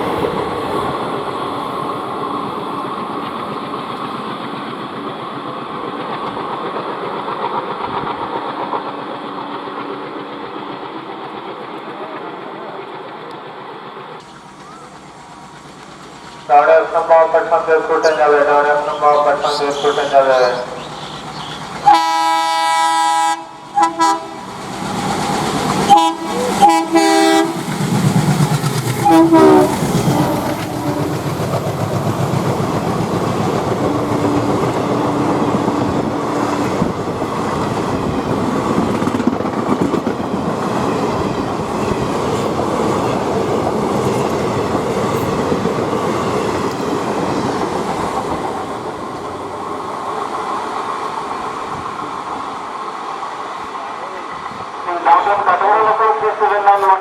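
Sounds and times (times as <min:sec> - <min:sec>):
diesel locomotive horn: 0:21.8 - 0:24.6, 0:25.8 - 0:27.7, 0:29.0 - 0:31.2
wheels clattering over rail joints: 0:27.6 - 0:52.0.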